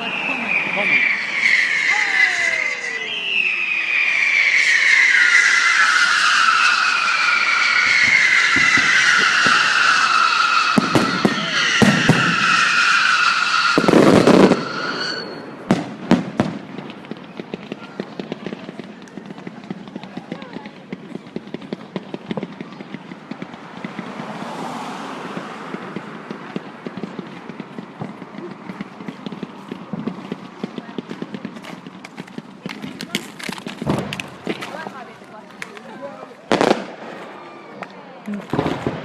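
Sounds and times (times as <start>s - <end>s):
firework whistle falling in pitch: 0.0s - 15.7s
firework crackling: 0.0s - 39.0s
fireworks bangs: 0.0s - 39.0s.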